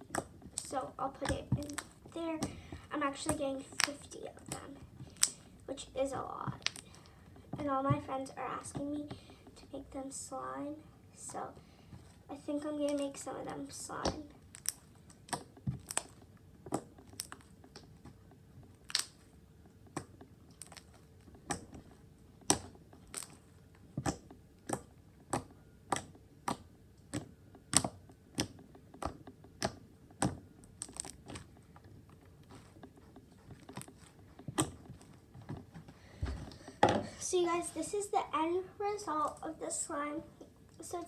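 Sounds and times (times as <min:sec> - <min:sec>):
slime wet clicks and pops: 0:18.8 - 0:19.2.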